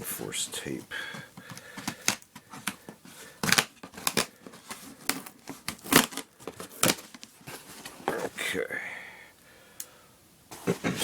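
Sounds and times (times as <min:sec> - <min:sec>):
packing tape being cut and ripped: 0:01.4 - 0:07.4.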